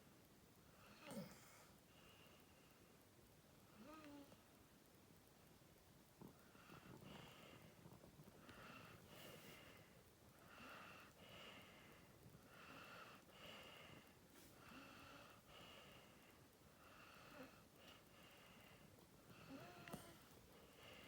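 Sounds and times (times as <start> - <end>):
dog snoring softly: 16.8 - 20.3.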